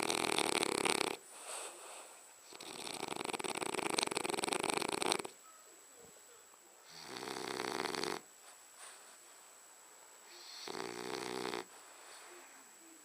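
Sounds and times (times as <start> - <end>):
dog breathing: 0.0 - 5.3, 10.3 - 12.4
dog snoring: 0.0 - 5.4, 6.8 - 8.3, 10.3 - 12.3.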